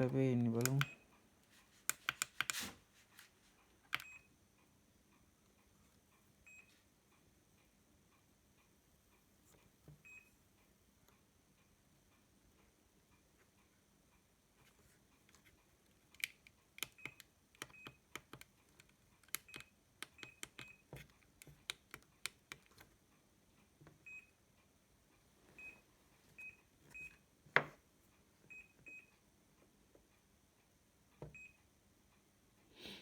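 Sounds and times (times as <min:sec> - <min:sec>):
taps and clicks on screen: 0:00.6 - 0:01.1, 0:01.8 - 0:02.6, 0:16.1 - 0:22.9.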